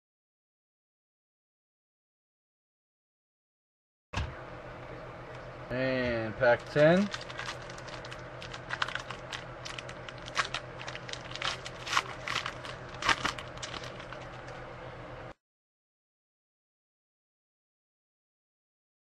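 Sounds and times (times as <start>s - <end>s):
card pack wrapper crinkling: 6.5s - 14.6s.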